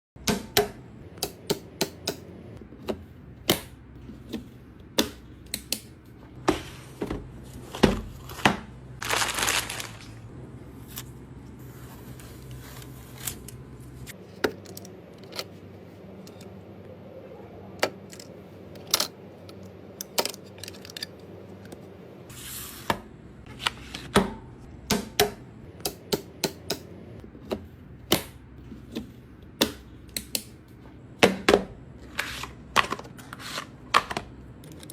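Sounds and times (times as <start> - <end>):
computer parts clicking: 34.6 - 34.9.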